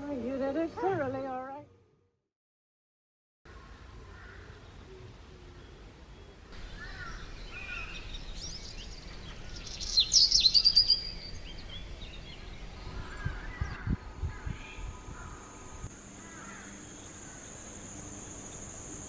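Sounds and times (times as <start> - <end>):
steady background hiss: 3.5 - 19.0
small birds chirping: 6.6 - 13.9.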